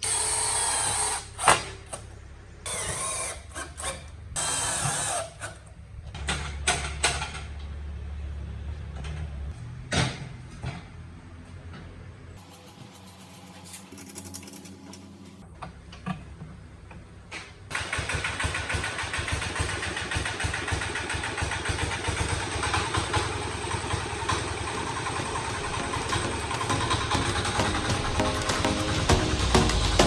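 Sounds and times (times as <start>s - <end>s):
small engine running: 2.6s - 5.6s, 12.4s - 15.4s, 17.7s - 30.0s.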